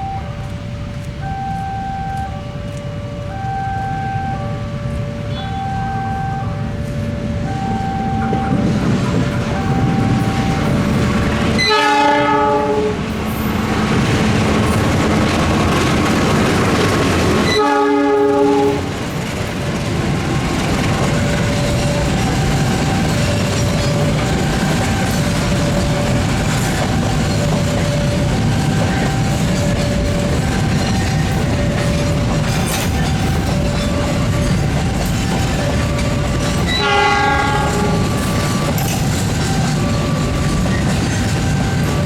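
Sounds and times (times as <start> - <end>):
locomotive horn blasts: 0.0 - 13.2, 17.1 - 19.0, 28.4 - 42.0
train rumble: 0.0 - 42.0
train wheels clacking on rails: 0.0 - 42.0
two-tone warning signal: 0.0 - 42.0.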